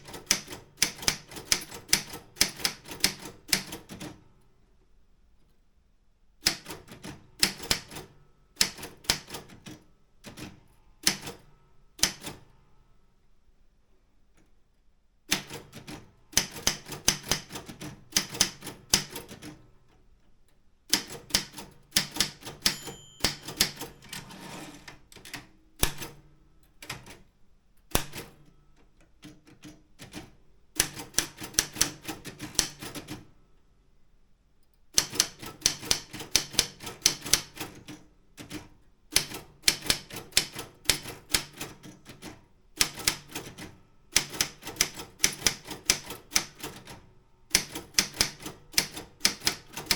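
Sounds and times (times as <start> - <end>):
typewriter keystrikes: 0.0 - 4.2, 6.4 - 11.4, 12.0 - 12.4, 15.3 - 19.6, 20.9 - 24.5, 25.2 - 26.2, 27.9 - 28.5, 29.2 - 33.2, 34.9 - 49.9
typewriter bell ringing: 22.4 - 24.6.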